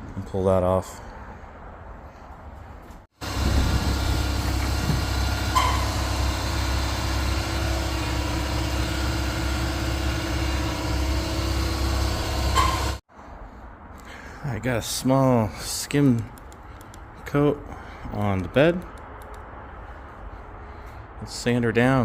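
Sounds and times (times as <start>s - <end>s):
machine humming: 3.2s - 13.0s.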